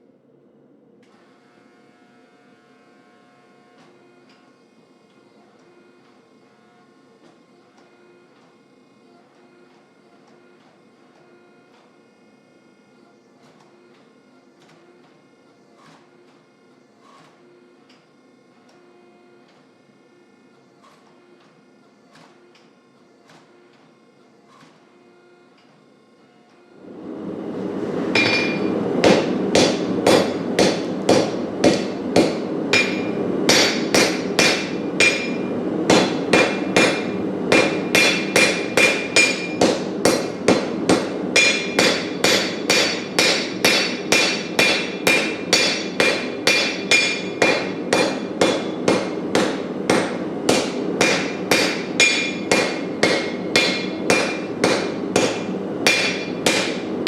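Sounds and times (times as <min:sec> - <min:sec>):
steady rushing noise: 0:26.8 - 0:40.8
hammer striking steel on anvil: 0:28.1 - 0:57.0.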